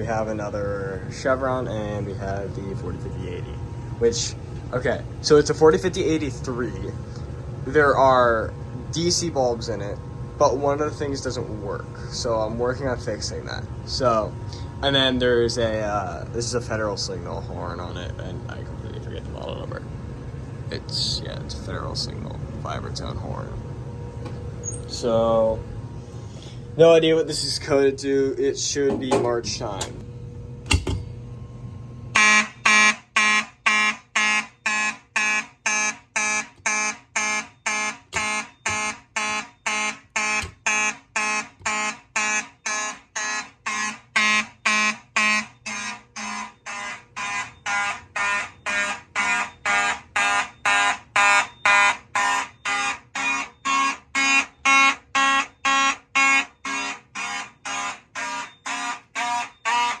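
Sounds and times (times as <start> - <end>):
fire alarm horn buzzing: 32.1 - 60.0.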